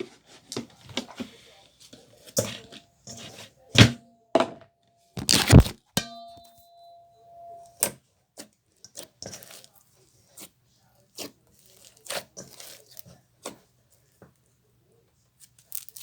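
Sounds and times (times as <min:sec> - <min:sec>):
clear ringing ding: 0:06.0 - 0:07.9.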